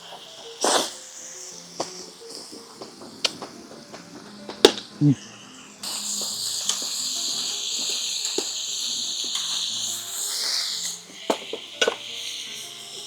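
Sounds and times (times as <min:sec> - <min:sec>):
meat sizzling on a griddle: 0:00.0 - 0:13.0.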